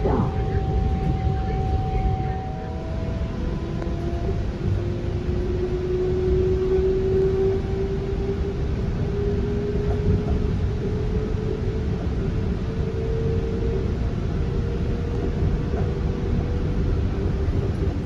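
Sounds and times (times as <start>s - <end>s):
train rumble: 0.0s - 18.0s.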